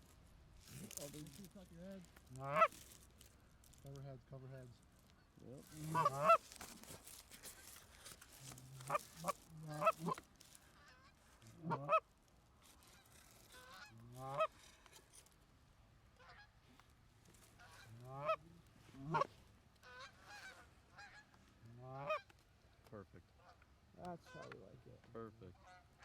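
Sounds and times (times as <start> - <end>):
canada goose honking: 0.7 - 4.0, 5.2 - 12.1, 12.7 - 14.9, 16.2 - 16.6, 17.4 - 22.3, 23.3 - 24.8, 25.5 - 26.0.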